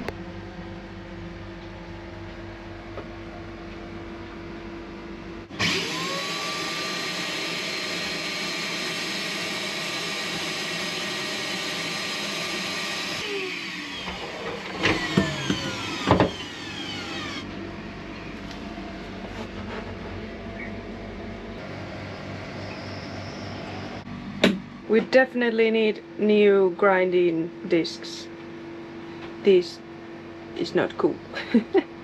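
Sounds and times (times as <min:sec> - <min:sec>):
angle grinder whining: 0:05.5 - 0:18.5.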